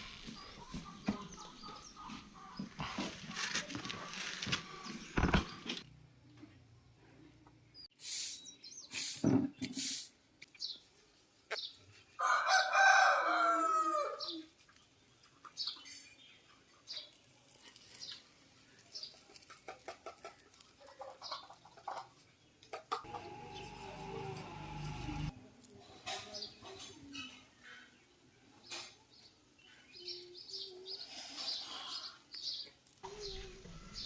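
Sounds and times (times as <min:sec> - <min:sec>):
rooster crowing: 0:12.2 - 0:14.3.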